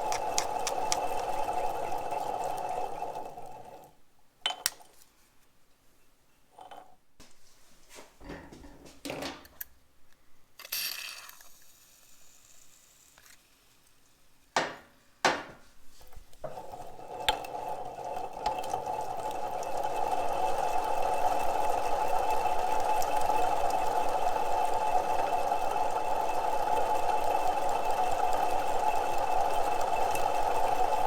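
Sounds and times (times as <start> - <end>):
mechanical whir: 0.0 - 3.9
sharp knocks: 14.6 - 15.7.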